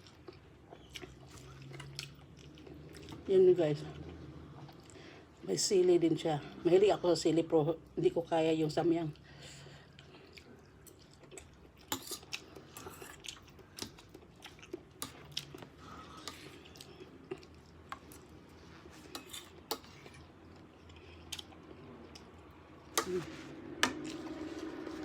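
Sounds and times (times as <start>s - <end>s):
person chewing: 0.0s - 3.3s, 9.9s - 23.2s.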